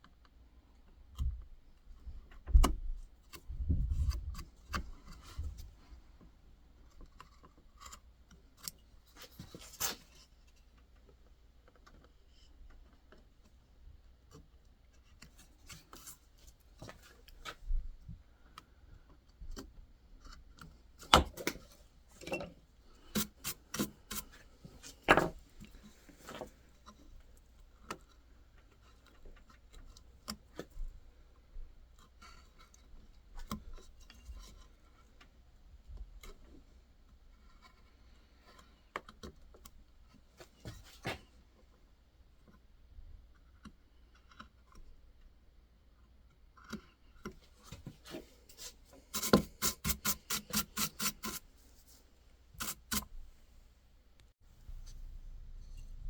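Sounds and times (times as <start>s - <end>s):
carving tools scraping wood: 20.1s - 30.9s, 46.6s - 52.0s, 52.6s - 53.4s.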